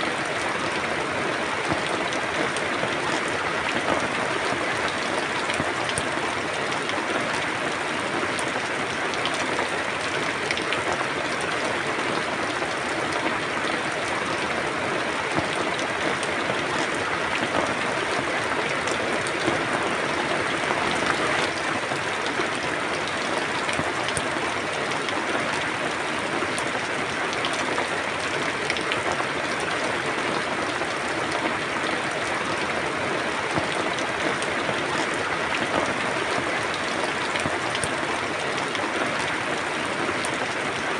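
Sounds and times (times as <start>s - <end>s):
steady rain: 0.0s - 40.9s
raindrop ticks: 1.6s - 6.1s, 15.3s - 19.9s, 33.5s - 38.0s.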